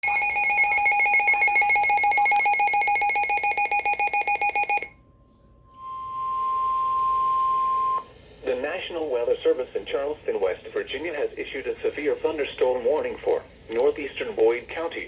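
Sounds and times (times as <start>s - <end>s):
rapid electronic alert beeping: 0.0s - 4.9s.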